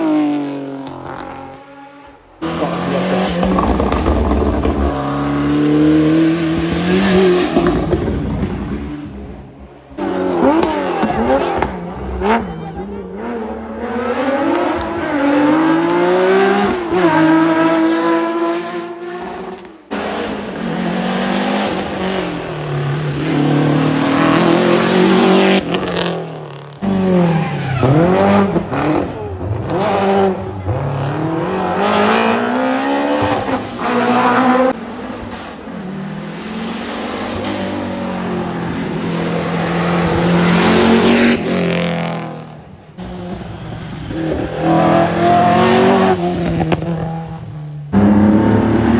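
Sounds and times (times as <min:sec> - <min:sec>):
rally car engines revving: 0:00.0 - 0:48.9
tyre noise: 0:02.4 - 0:12.6.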